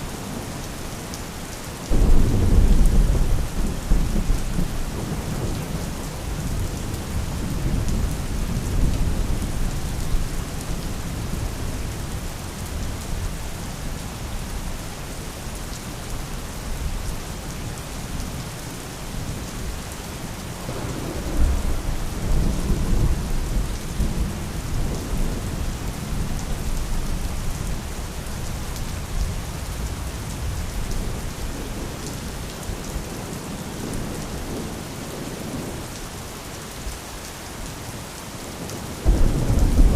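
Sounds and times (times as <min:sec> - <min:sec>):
steady rain falling: 0:00.0 - 0:39.9
distant thunder rumbling: 0:01.9 - 0:09.0, 0:20.7 - 0:25.1, 0:39.0 - 0:39.9.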